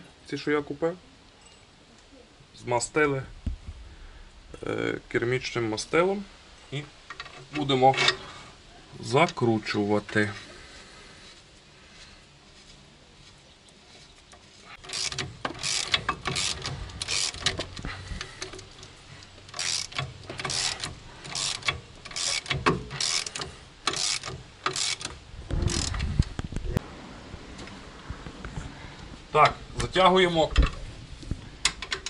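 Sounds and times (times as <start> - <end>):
hand ratchet clicking: 14.8 - 26.2.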